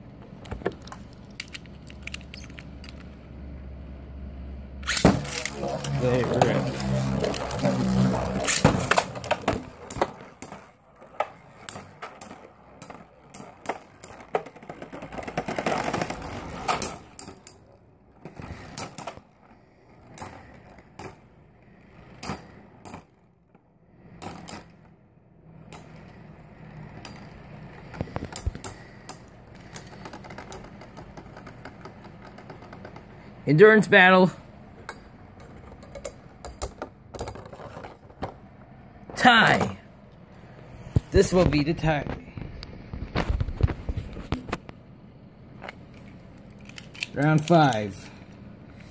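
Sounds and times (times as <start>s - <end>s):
spinning tops whirring: 4.8s - 17.4s.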